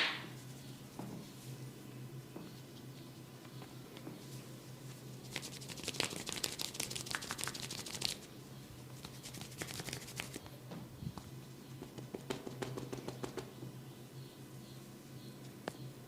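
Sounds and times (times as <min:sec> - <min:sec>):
steady low hum: 0:00.0 - 0:16.0
hands scratching through hair: 0:05.2 - 0:08.3, 0:09.0 - 0:10.5.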